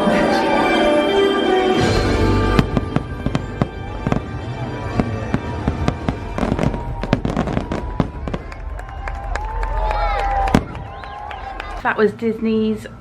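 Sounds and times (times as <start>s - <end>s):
music playing: 0.0s - 8.4s
fireworks cracking and popping: 2.5s - 11.2s.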